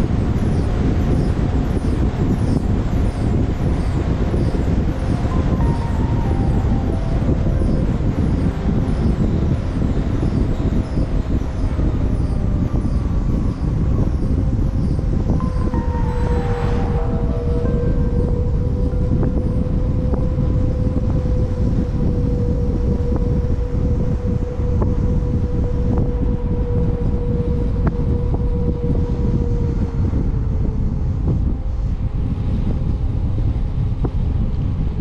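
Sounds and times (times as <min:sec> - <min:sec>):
steady whine: 0:00.0 - 0:35.0
wind buffeting microphone: 0:00.0 - 0:35.0.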